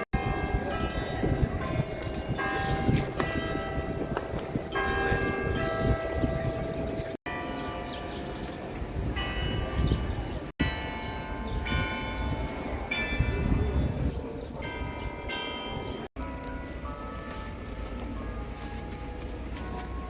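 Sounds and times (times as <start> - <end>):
carillon bells playing a tune: 0.0 - 8.4, 14.6 - 20.0
low city rumble: 0.0 - 20.0.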